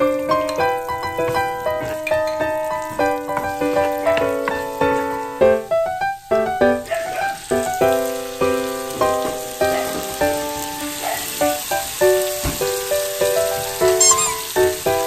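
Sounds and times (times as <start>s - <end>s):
food sizzling in a pan: 0.0s - 15.0s.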